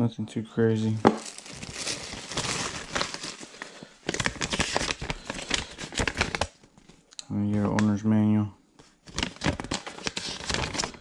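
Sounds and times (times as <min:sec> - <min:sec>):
packaging rustling and crinkling: 0:00.8 - 0:07.0, 0:08.9 - 0:11.0.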